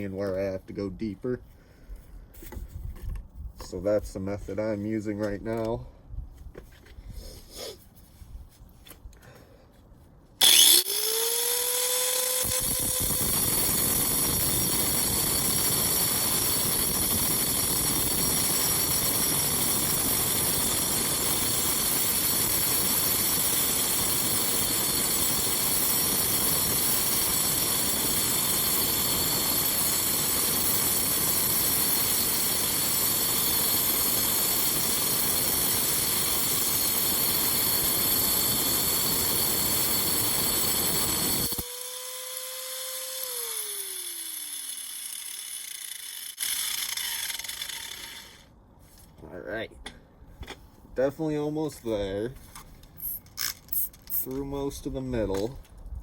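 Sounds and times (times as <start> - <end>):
angle grinder cutting stone: 10.4 - 48.5.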